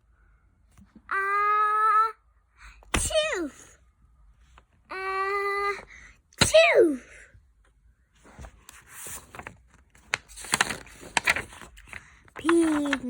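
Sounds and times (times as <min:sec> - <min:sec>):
child speaking: 0:01.1 - 0:03.8, 0:04.9 - 0:07.2, 0:12.4 - 0:13.0.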